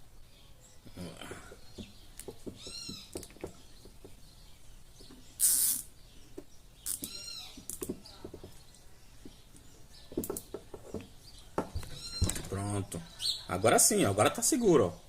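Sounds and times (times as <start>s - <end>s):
cable tie zipping: 5.4s - 5.9s.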